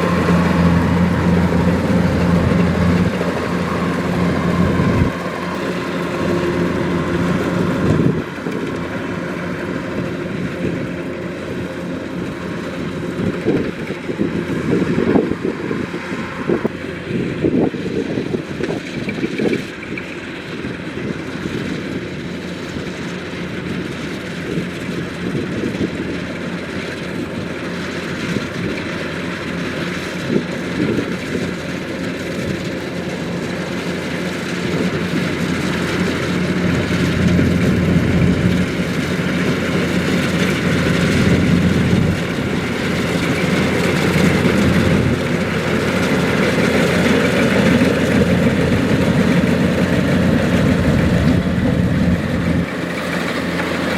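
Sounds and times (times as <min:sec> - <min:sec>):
combine harvester running: 0:00.0 - 0:53.9.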